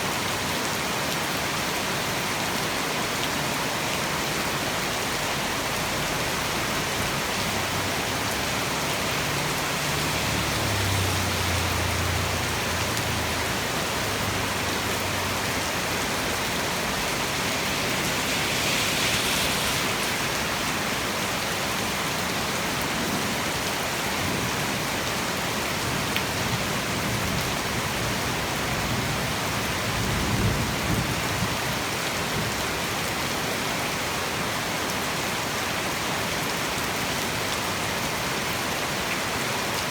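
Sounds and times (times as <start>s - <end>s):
heavy rain pouring: 0.0s - 39.9s
low rumble: 15.8s - 21.2s.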